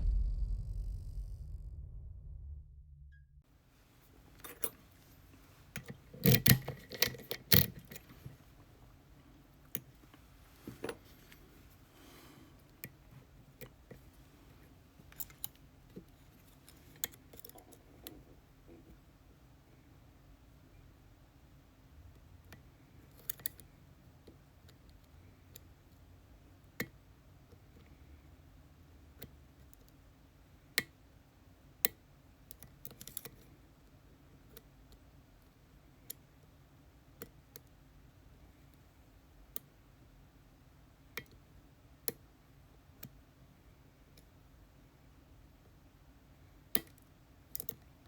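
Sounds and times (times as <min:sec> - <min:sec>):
lock picking clicks and taps: 0:05.8 - 0:08.1, 0:46.8 - 0:47.9.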